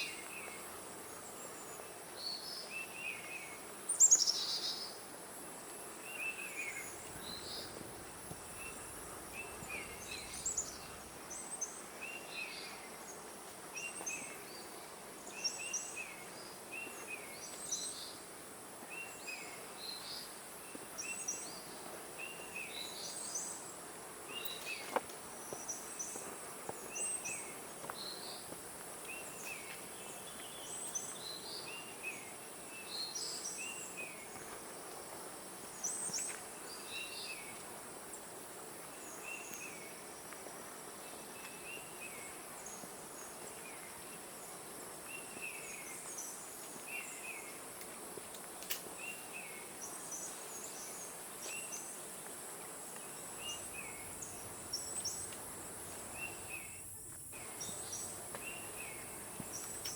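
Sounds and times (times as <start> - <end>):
birds chirping: 6.0 - 13.2, 49.0 - 59.9.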